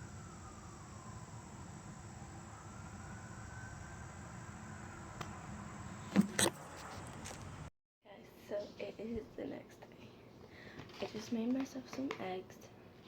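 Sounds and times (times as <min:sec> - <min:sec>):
faint whine: 0:00.0 - 0:07.7.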